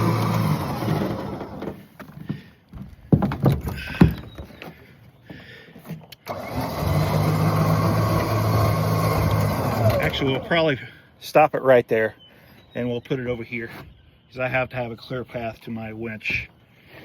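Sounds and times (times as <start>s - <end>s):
winch motor hauling: 0.0s - 2.6s, 3.4s - 11.0s
knocks and clunks: 0.1s - 6.3s.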